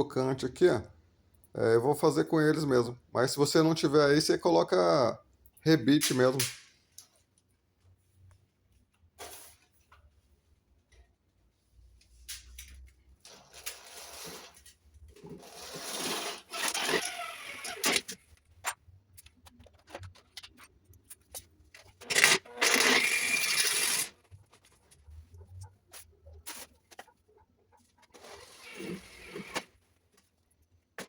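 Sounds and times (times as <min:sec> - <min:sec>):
power drill whirring: 0:15.7 - 0:18.2, 0:22.1 - 0:24.1, 0:28.1 - 0:29.7.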